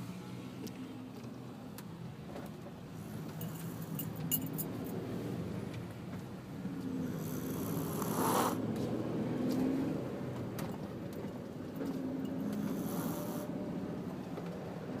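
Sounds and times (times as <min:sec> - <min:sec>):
boy snoring: 0:07.0 - 0:08.6, 0:12.6 - 0:13.6.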